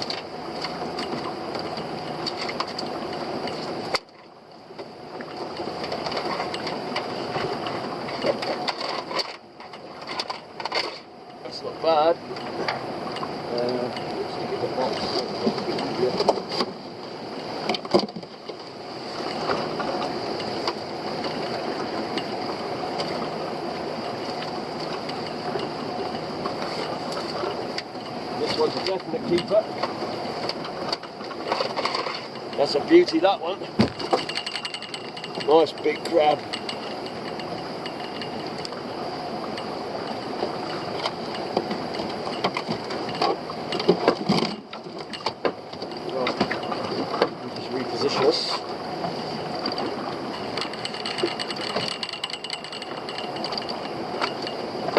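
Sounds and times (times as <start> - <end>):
boat engine running: 0.0 - 54.9
crab pots clattering on deck: 17.6 - 18.6, 28.4 - 38.7, 40.6 - 48.7.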